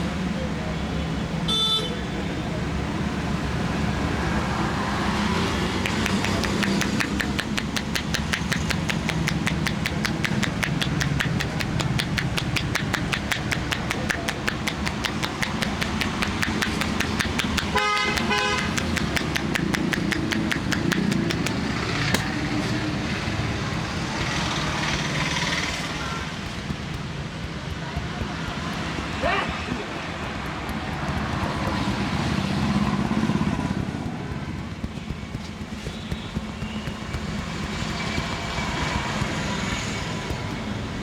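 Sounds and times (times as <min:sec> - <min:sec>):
street traffic noise: 0:00.0 - 0:41.0
vehicle horn: 0:01.5 - 0:02.1, 0:17.7 - 0:18.8
rapid hand slaps on skin: 0:04.6 - 0:22.5, 0:23.7 - 0:41.0.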